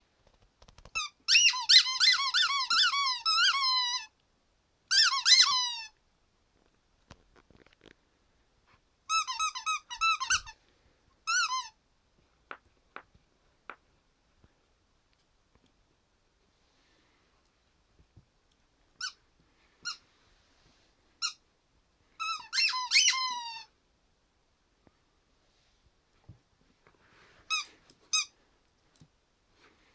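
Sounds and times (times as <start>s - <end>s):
rubber squeaky toy squeaking: 0.9s - 4.1s, 4.9s - 5.9s, 9.1s - 10.6s, 11.3s - 11.8s, 19.0s - 19.2s, 22.2s - 23.7s, 27.5s - 28.3s.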